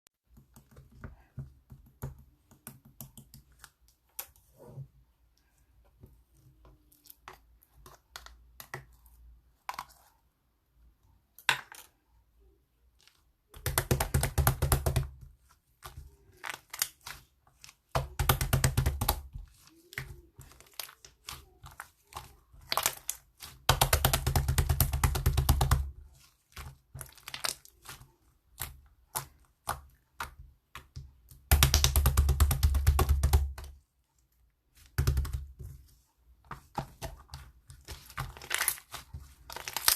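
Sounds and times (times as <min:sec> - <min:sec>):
slime squished by hand: 0:12.9 - 0:33.8, 0:36.6 - 0:39.9.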